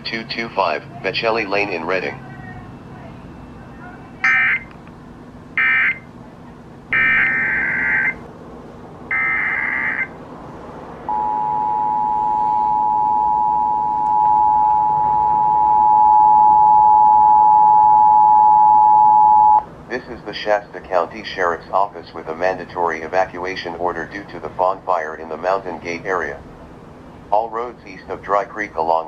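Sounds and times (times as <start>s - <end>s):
two-tone attention signal: 4.2s - 4.7s, 11.1s - 19.6s.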